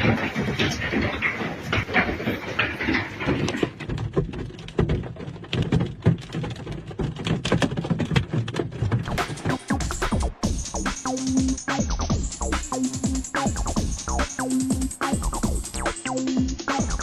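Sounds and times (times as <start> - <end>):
hailstones clattering: 0.0 - 9.1.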